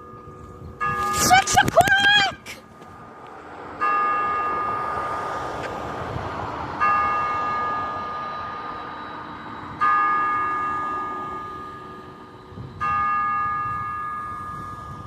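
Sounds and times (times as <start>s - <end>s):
church bell striking: 0.0s - 1.2s, 3.8s - 5.2s, 6.8s - 15.0s.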